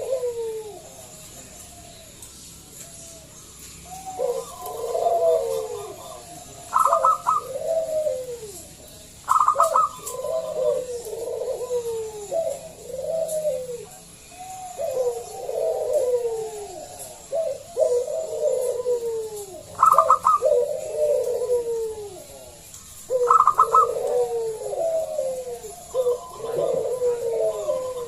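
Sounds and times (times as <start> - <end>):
dove cooing: 0.0 - 28.0
dove stuttering notes: 17.5 - 28.0.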